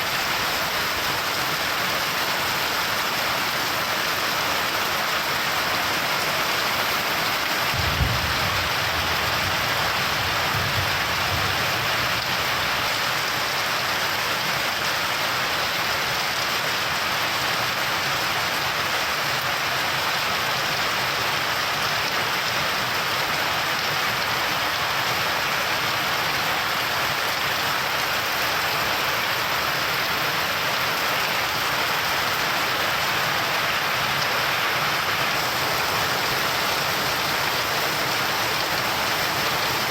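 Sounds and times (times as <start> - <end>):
steady rain: 0.0 - 39.9
low rumble of thunder: 7.7 - 11.9.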